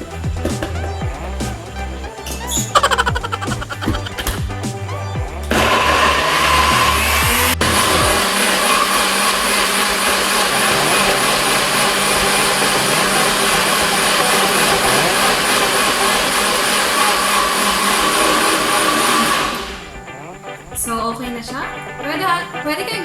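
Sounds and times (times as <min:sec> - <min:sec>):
electric blender running: 0:05.5 - 0:20.0.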